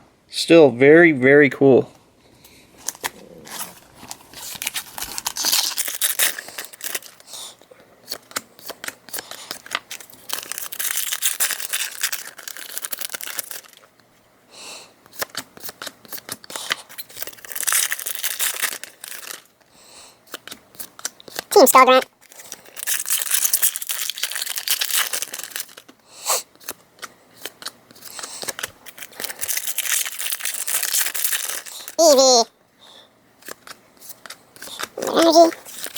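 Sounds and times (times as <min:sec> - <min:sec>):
cards being handled: 0:02.8 - 0:07.4, 0:08.0 - 0:13.8, 0:20.3 - 0:32.4, 0:33.4 - 0:35.9
foil wrapper crinkling and tearing: 0:02.8 - 0:13.9, 0:15.1 - 0:19.7, 0:20.3 - 0:26.8, 0:27.4 - 0:32.4, 0:33.4 - 0:35.9.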